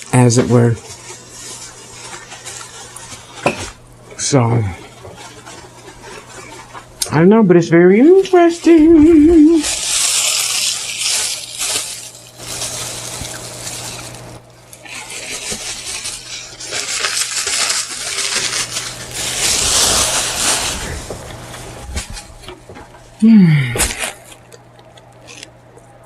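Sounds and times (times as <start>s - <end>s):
chewing and mouth smacking: 24.0s - 25.9s.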